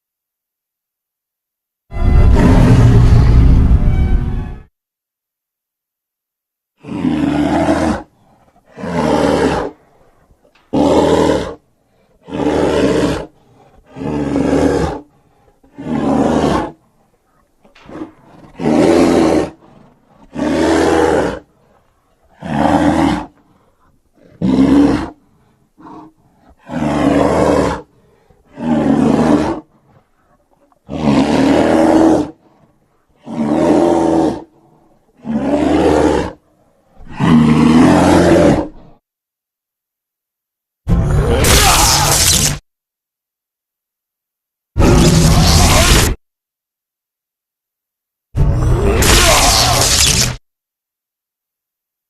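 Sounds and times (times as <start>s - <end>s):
monster roars: 2.0s - 3.8s, 6.8s - 8.1s, 8.7s - 9.8s, 12.2s - 15.1s, 17.8s - 21.5s, 22.3s - 23.4s, 25.8s - 29.7s, 30.9s - 32.4s, 37.0s - 38.8s, 40.9s - 42.6s, 44.8s - 46.2s, 48.4s - 50.4s.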